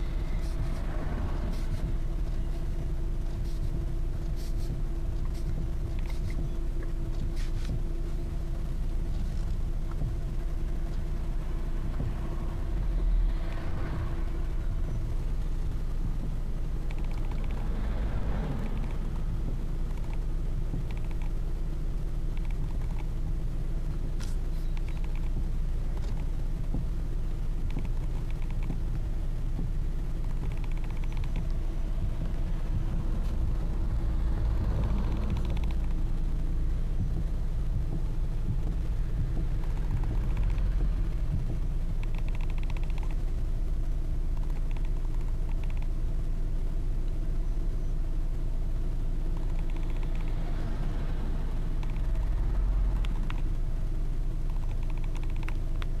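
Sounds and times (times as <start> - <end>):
car engine idling: 0.0 - 56.0
rapid knocking from steering: 27.6 - 36.2, 37.0 - 43.2.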